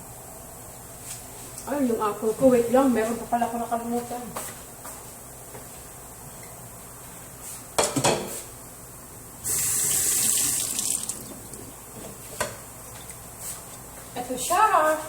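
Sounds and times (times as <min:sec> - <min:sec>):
kitchen water tap running: 0:09.4 - 0:12.0.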